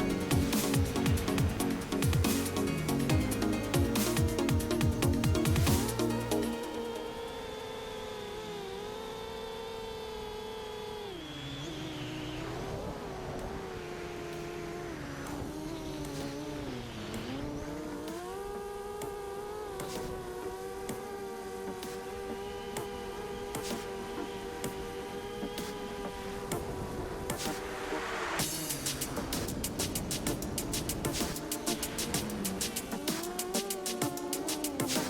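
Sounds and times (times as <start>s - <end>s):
drone motors whining: 0.0s - 35.0s.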